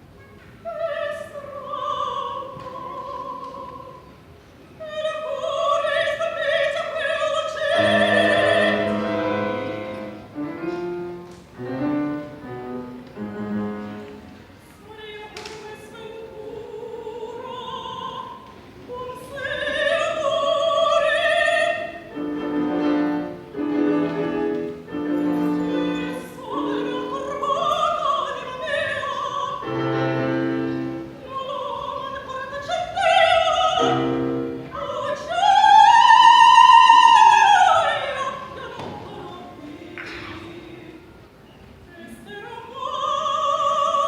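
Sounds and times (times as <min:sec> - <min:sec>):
operatic soprano singing: 0:00.5 - 0:04.2, 0:04.8 - 0:44.0
piano chords: 0:07.6 - 0:14.6, 0:20.7 - 0:31.9, 0:33.4 - 0:35.2.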